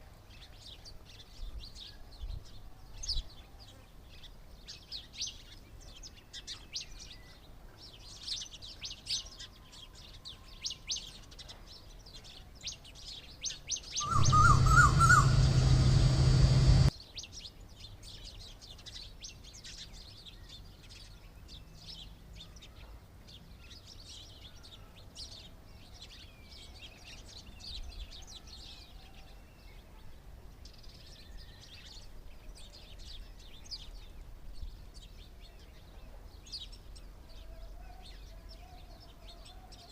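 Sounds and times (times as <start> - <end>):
small birds chirping: 0.0 - 39.9
loud unidentified sound: 14.0 - 16.9.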